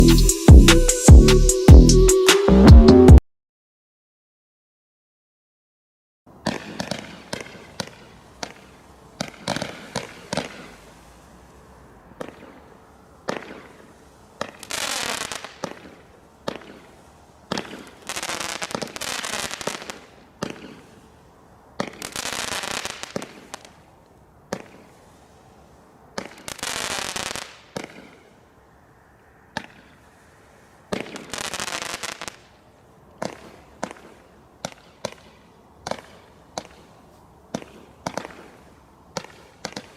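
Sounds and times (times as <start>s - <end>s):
fireworks cracks and bangs: 6.3s - 11.3s, 12.1s - 21.0s, 21.8s - 23.9s, 24.5s - 25.3s, 26.1s - 28.2s, 30.9s - 32.5s, 33.2s - 39.9s
fireworks hissing: 12.4s - 20.0s, 30.9s - 32.4s.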